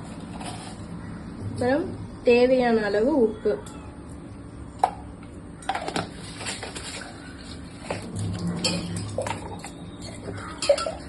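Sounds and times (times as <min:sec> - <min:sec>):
spoon clinking against dishes: 0:08.6 - 0:11.0.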